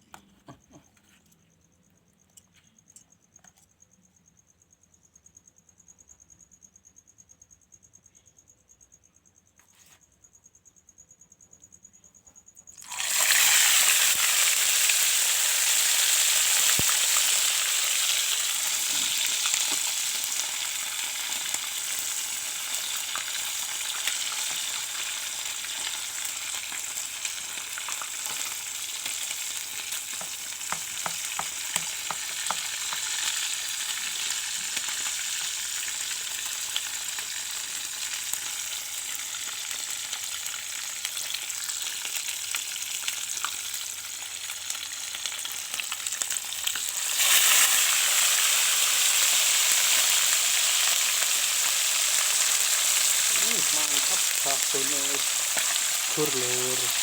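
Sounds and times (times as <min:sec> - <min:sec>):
insect trill: 0:00.3 - 0:57.0
fish sizzling in hot oil: 0:12.7 - 0:57.0.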